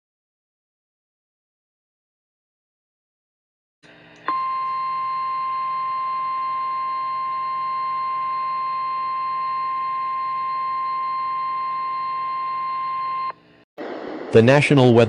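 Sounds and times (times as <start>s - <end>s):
steady warning alarm tone: 4.3s - 13.4s.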